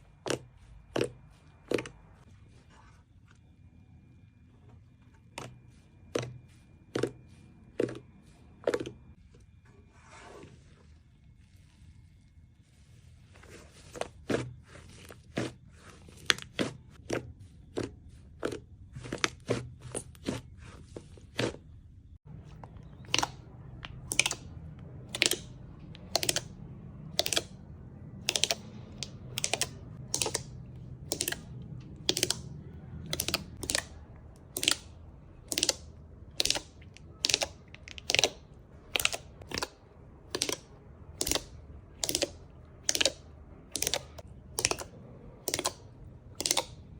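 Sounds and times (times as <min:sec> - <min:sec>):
slime clicking pops: 0:24.0 - 0:24.4, 0:26.1 - 0:26.5, 0:32.0 - 0:32.4, 0:33.1 - 0:33.9, 0:34.5 - 0:34.9, 0:35.5 - 0:35.8, 0:36.4 - 0:39.7, 0:40.3 - 0:40.6, 0:41.2 - 0:43.2, 0:43.8 - 0:44.9, 0:45.5 - 0:45.8, 0:46.4 - 0:46.7.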